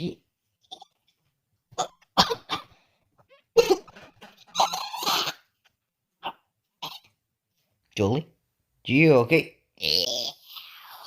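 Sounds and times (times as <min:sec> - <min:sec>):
person choking cries: 0:01.7 - 0:02.7, 0:04.5 - 0:05.5, 0:06.2 - 0:07.1, 0:09.8 - 0:11.0
person coughing: 0:01.8 - 0:02.8.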